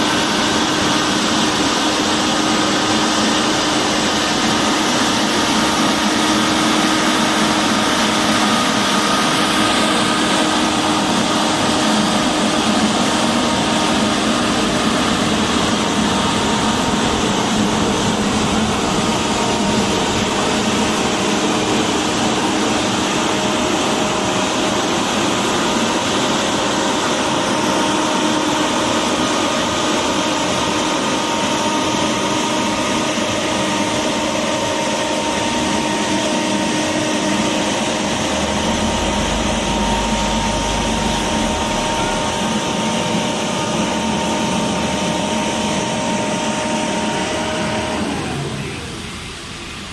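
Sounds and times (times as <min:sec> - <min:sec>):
construction machinery engine drone: 0:00.0 - 0:49.9
steady machine tones: 0:36.1 - 0:49.9.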